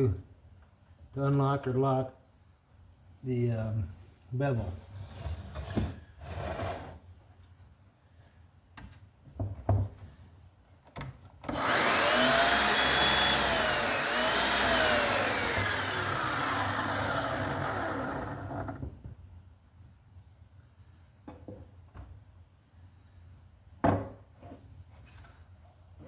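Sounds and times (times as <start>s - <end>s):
miter saw motor whine: 11.5s - 18.7s.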